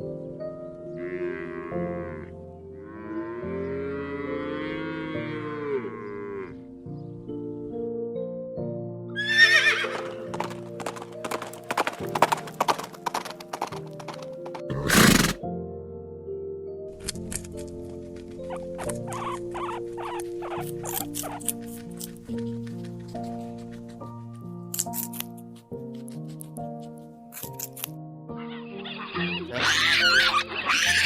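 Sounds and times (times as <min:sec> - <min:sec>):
background music: 0:00.0 - 0:31.0
horse whinnying: 0:09.2 - 0:10.4, 0:14.7 - 0:15.4, 0:28.4 - 0:31.0.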